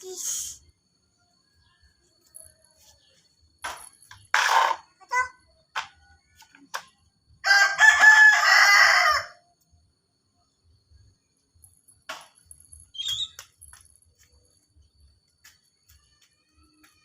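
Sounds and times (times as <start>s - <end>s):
rooster crowing: 7.4s - 9.5s
faint high chirp: 12.5s - 13.8s.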